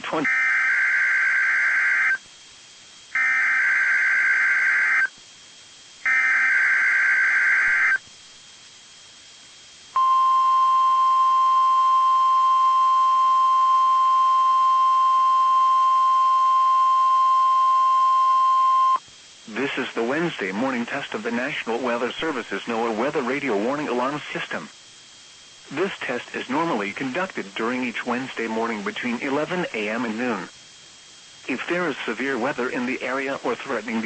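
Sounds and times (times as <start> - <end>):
steady warning alarm tone: 0.0 - 2.3, 3.1 - 5.2, 6.0 - 8.0, 10.0 - 19.0.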